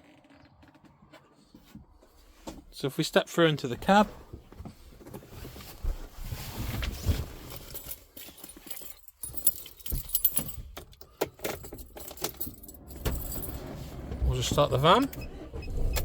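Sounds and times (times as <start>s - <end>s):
clothes rustling: 3.8s - 10.6s
keys jangling: 7.3s - 13.6s.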